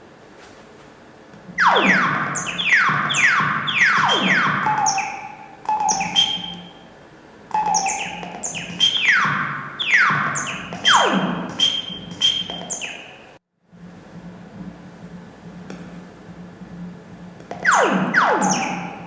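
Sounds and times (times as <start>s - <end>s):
laser-like zaps: 1.6s - 6.6s, 7.5s - 13.2s
short high beeps: 1.9s - 6.8s, 7.5s - 11.0s.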